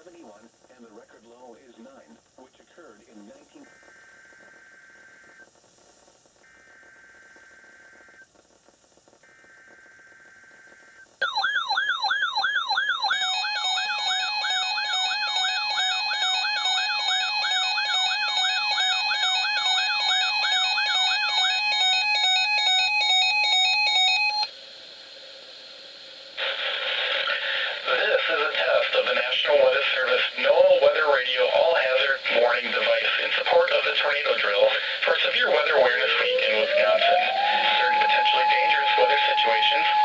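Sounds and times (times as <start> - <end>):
warbling siren: 10.1 - 24.5, 35.1 - 40.0
data tone bursts: 33.8 - 40.0.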